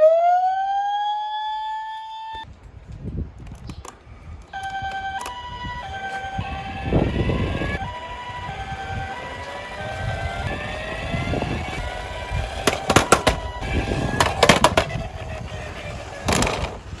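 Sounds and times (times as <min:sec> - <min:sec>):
siren tones: 0:00.0 - 0:02.4, 0:04.6 - 0:17.0
low rolling rumble: 0:04.5 - 0:17.0
toy cars running: 0:04.6 - 0:17.0
sharp clacks: 0:12.6 - 0:15.0.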